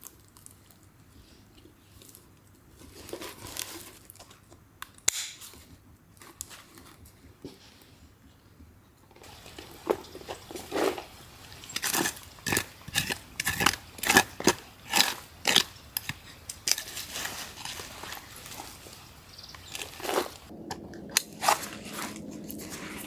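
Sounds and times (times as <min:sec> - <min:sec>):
hard objects clicking and knocking: 0:11.7 - 0:17.9.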